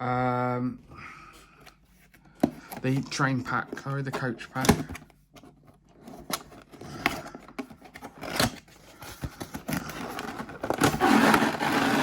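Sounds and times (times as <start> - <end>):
packaging clicks and scrapes: 2.4 - 12.0
packaging rustling and crinkling: 5.5 - 12.0.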